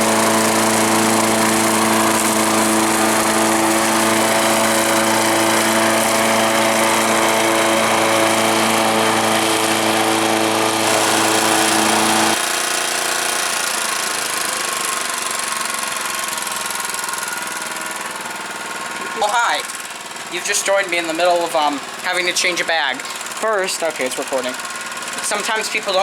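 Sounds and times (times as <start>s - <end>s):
lawn mower engine running: 0.0s - 26.0s.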